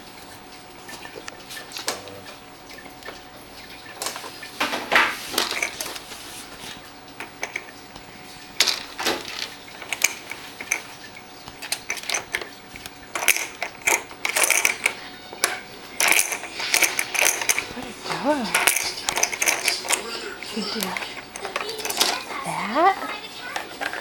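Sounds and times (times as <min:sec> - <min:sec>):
toy pieces clattering: 0:08.6 - 0:10.9, 0:11.6 - 0:24.0.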